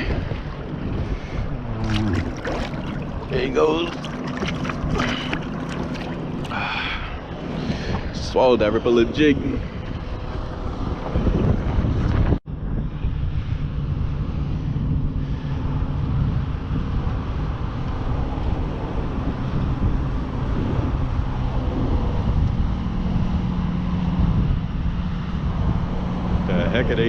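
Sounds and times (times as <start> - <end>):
water wash rumbling: 0.0 - 11.1
outboard motor running: 0.0 - 11.4
wind on microphone: 0.0 - 27.0.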